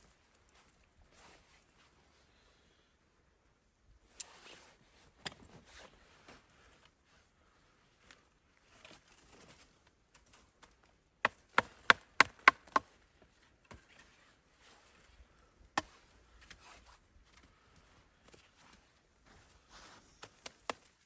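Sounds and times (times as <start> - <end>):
axe chopping wood: 11.2 - 12.9.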